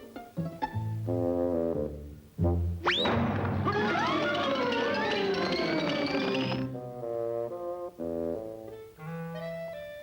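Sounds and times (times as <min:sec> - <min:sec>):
cartoon orchestral music: 0:03.0 - 0:06.8
rising whistle-like glide: 0:03.8 - 0:06.7.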